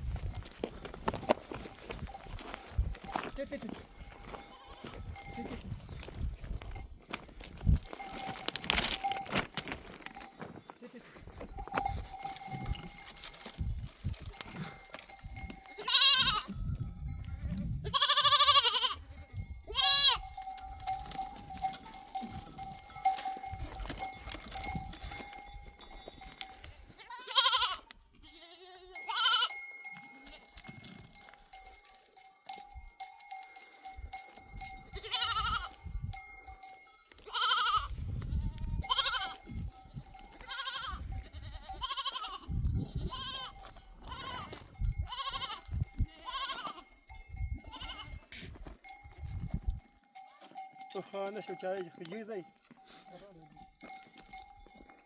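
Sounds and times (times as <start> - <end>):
sheep bells ringing: 0.0 - 55.0
sheep bleating: 4.3 - 5.0, 15.7 - 16.6, 17.8 - 20.3, 26.9 - 30.5, 34.9 - 35.8, 37.2 - 39.5, 40.4 - 46.9, 47.7 - 48.2.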